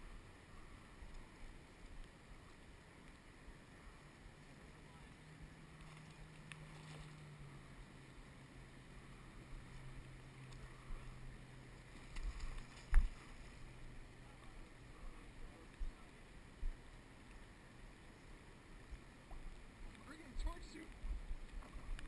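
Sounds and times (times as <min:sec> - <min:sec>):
faint steady hum: 0:00.0 - 0:22.0.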